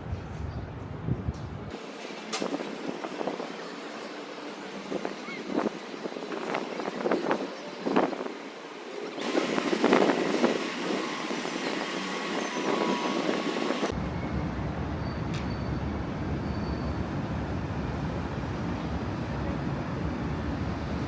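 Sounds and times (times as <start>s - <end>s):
wind buffeting microphone: 0.0s - 1.8s, 4.8s - 14.0s
city traffic rumble: 0.0s - 21.0s.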